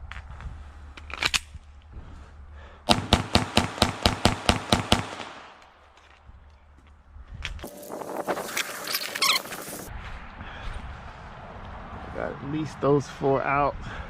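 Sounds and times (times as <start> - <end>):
pistol shots: 2.9 - 5.7.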